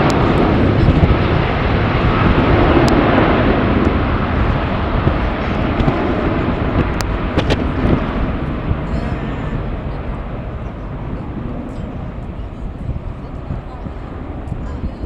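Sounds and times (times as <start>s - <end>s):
jet engines running: 0.0s - 15.0s
wind buffeting microphone: 0.0s - 15.0s.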